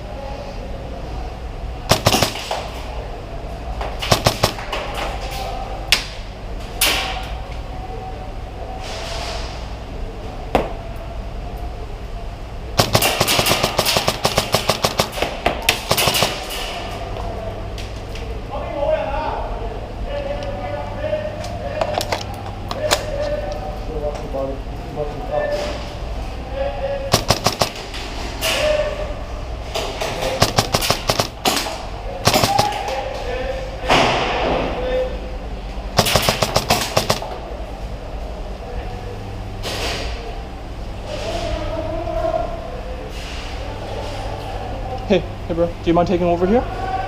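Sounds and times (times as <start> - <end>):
airsoft guns firing: 1.9 - 2.8, 4.0 - 4.9, 12.8 - 16.8, 27.1 - 28.0, 30.2 - 33.0, 36.0 - 37.4.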